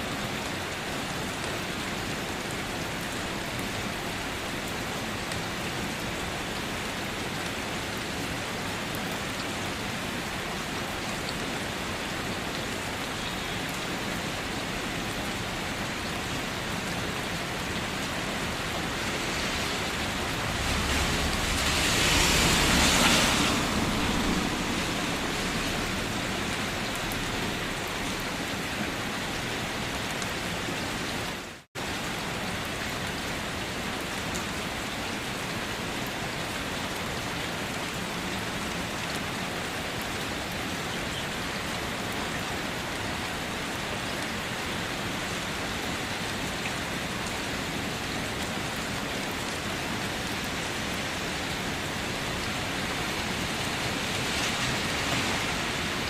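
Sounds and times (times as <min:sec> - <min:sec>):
steady rain hiss: 0:00.0 - 0:56.0
low rumble: 0:19.2 - 0:26.4.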